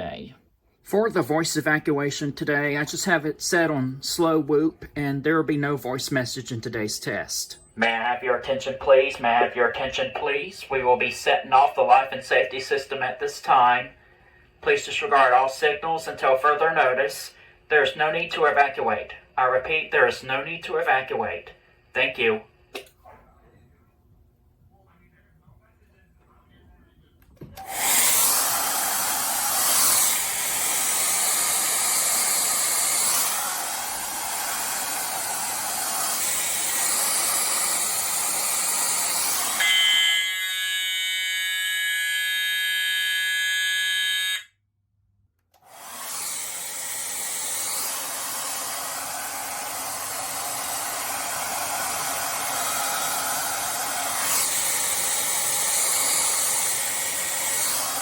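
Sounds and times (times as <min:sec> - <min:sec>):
hair dryer blowing: 0:27.6 - 0:42.1, 0:45.6 - 0:58.0.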